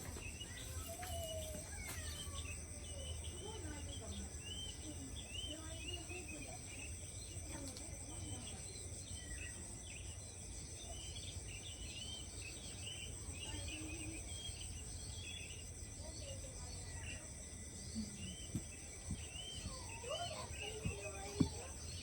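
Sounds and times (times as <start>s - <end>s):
insects trilling: 0.0s - 22.0s
soft knocks: 20.8s - 21.7s.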